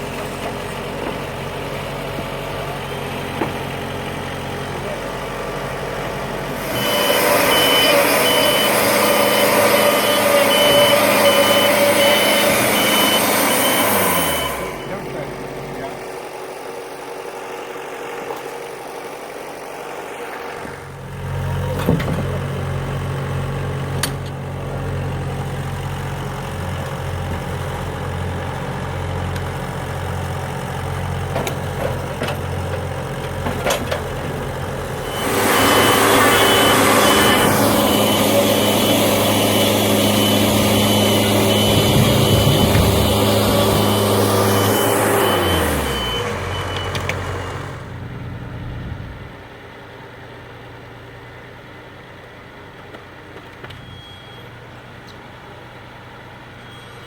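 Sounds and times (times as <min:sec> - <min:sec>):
engine running: 0:00.0 - 0:57.0
rushing grinding noise: 0:03.6 - 0:16.4, 0:32.5 - 0:46.6
high beep: 0:06.6 - 0:15.0, 0:35.0 - 0:47.6, 0:53.8 - 0:54.5.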